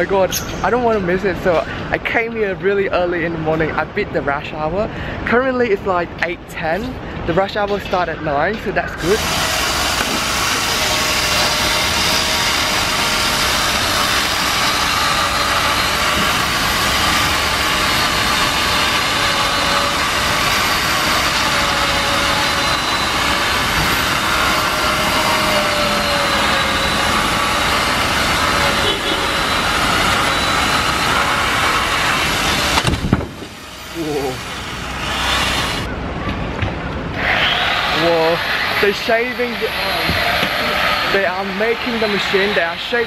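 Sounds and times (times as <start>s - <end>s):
machine running steadily: 9.0s - 35.9s.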